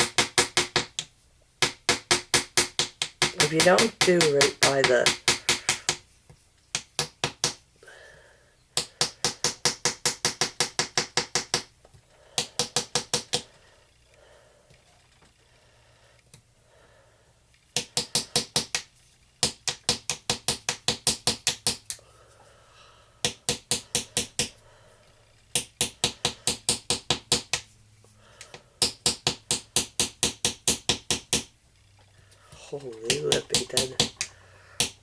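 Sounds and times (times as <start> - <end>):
small hammer tapping on plaster: 0.0 - 6.0, 6.7 - 7.6, 8.8 - 11.7, 12.4 - 13.5, 17.8 - 22.0, 23.2 - 24.6, 25.5 - 27.7, 28.4 - 31.5, 32.5 - 35.0.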